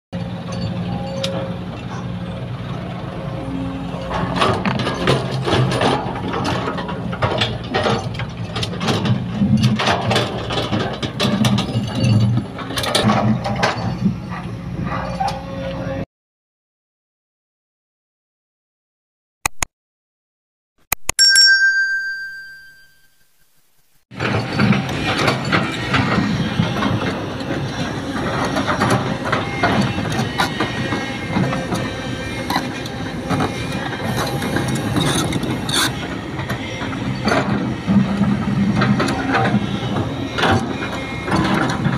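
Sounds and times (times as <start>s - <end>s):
excavator diesel engine running: 0.2s - 16.0s, 24.2s - 41.9s
metallic clanks of excavator bucket: 4.1s - 14.0s.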